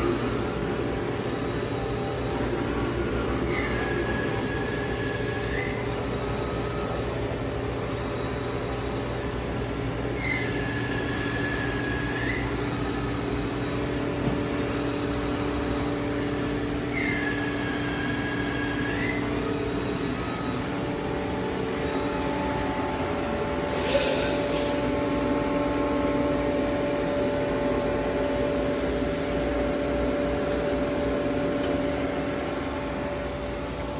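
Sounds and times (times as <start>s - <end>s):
lathe machine hum: 0.0s - 33.9s
rising machine whine: 0.0s - 33.9s
short hiss: 23.7s - 24.9s.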